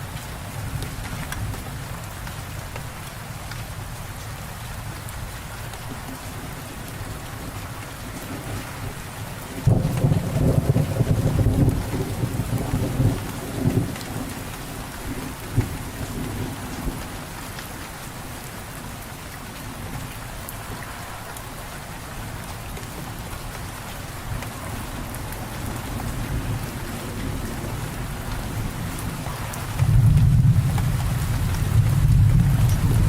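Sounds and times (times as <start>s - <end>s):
steady rain falling: 0.0s - 33.0s
low rolling thunder: 7.4s - 17.4s, 24.2s - 33.0s.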